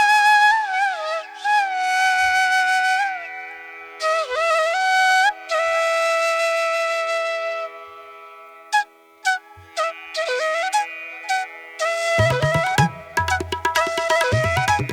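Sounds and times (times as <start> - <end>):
flute-like melody: 8.7 - 14.9.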